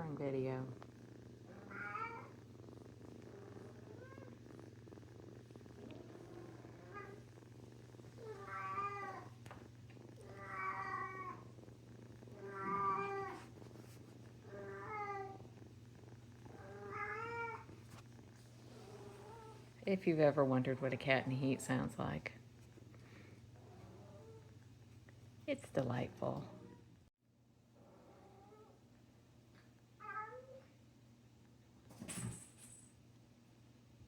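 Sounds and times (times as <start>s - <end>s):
cat purring: 0.0s - 27.1s
cat yowling: 1.6s - 2.3s.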